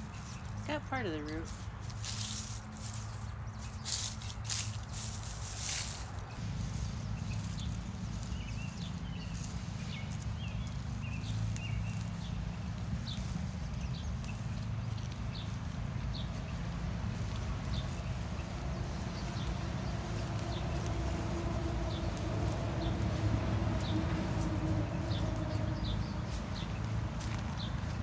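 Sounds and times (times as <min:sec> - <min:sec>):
steady low rumble: 0:00.0 - 0:28.0
small bird chirping: 0:01.4 - 0:23.1.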